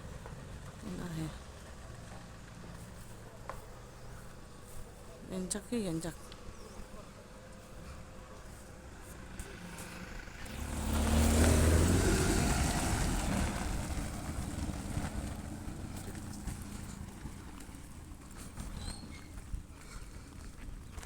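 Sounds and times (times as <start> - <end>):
vehicle driving past: 6.6 - 19.2.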